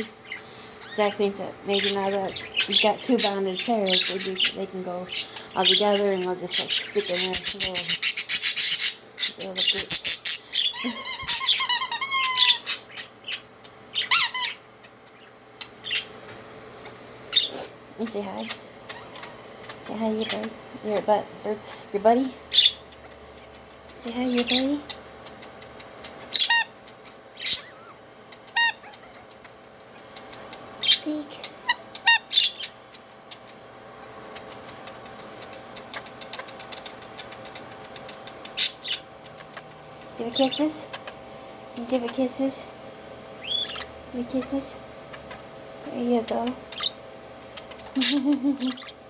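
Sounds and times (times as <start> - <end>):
budgerigars chirping and squawking: 0.0 - 49.0
faint steady hum: 0.0 - 49.0
budgie clicking and ticking: 24.9 - 30.7, 31.4 - 40.2.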